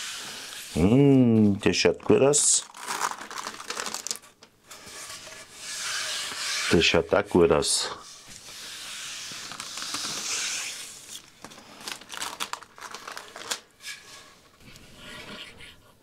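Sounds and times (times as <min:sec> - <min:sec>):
rustling handling noise: 0:00.7 - 0:05.5, 0:06.8 - 0:14.7.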